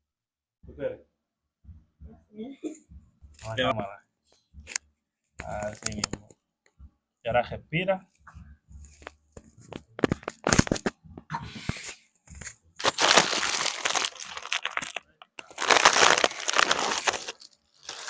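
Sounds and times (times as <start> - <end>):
crinkling and rustling: 5.4 - 6.4, 8.8 - 18.0.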